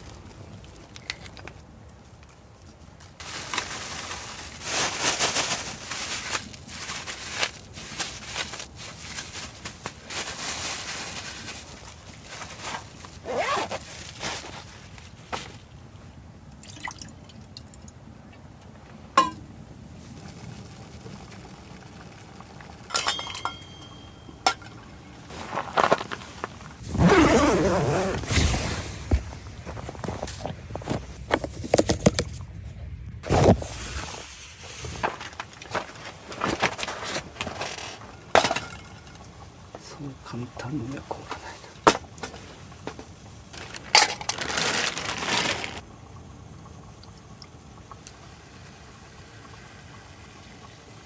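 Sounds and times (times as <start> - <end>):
liquid pouring and dripping: 16.5 - 18.0
cookware and utensils clinking: 19.2 - 19.5, 22.9 - 25.0, 38.0 - 39.4.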